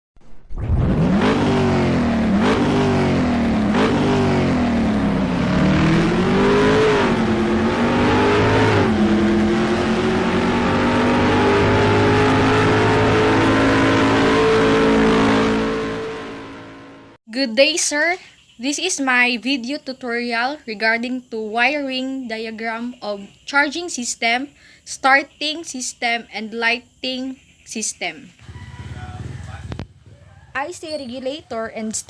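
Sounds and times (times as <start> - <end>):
car engine revving: 0.2 - 17.2, 28.4 - 30.2.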